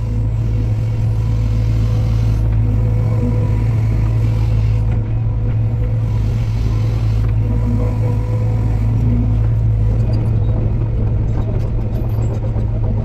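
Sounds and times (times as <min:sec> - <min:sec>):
heavy machine engine humming: 0:00.0 - 0:13.0.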